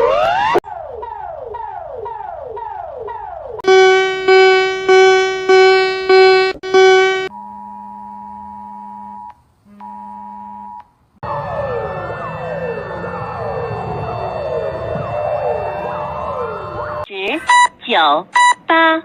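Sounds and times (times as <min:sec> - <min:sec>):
falling alarm sweeps: 0:00.0 - 0:17.7
loud pulsed beeps: 0:03.6 - 0:07.3
electronic attention tone: 0:03.6 - 0:10.8.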